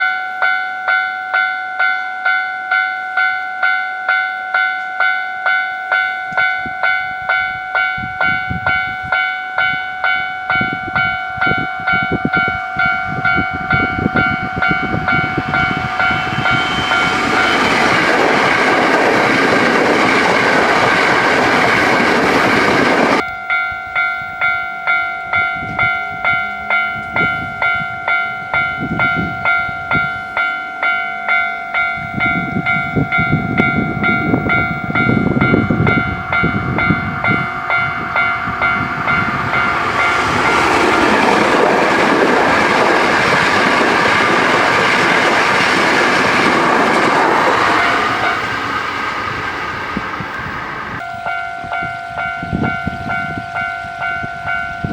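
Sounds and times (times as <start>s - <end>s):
level crossing bell clanging: 0.0s - 49.4s, 51.0s - 54.9s
passing train rush: 0.0s - 54.9s
train wheels clattering: 14.6s - 23.2s, 34.3s - 51.0s.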